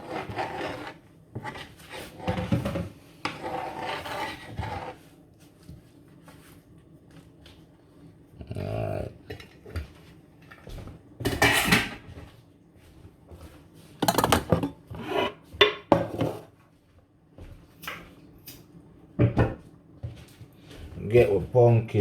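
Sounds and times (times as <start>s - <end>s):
pots and utensils clattering: 10.5s - 12.1s, 14.0s - 16.5s.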